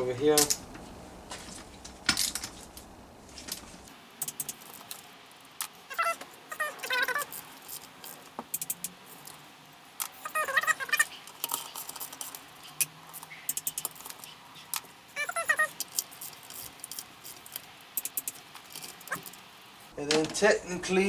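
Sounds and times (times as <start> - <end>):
metal tools rattling: 0.0 - 5.0, 15.2 - 20.5
ratchet wrench clicking: 4.2 - 5.0, 6.8 - 9.4, 10.0 - 14.3, 15.2 - 19.4.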